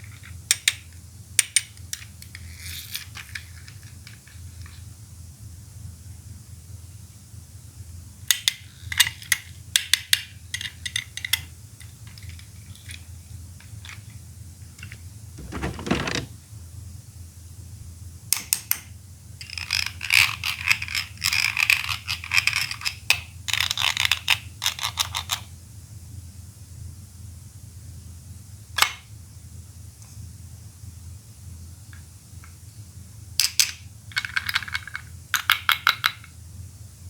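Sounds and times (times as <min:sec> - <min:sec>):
brief scraping: 0:15.4 - 0:16.4.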